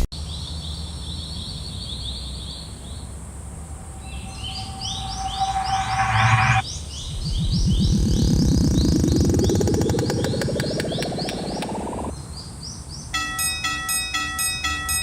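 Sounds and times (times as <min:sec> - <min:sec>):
low steady hum: 0:02.9 - 0:12.1
rushing noise with steady tone: 0:03.3 - 0:12.1.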